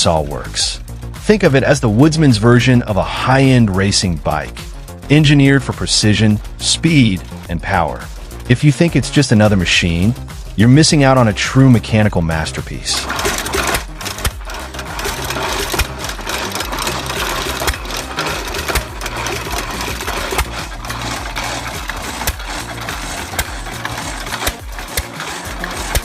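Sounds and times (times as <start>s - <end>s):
log saw clattering: 5.1s - 8.6s, 11.9s - 26.0s.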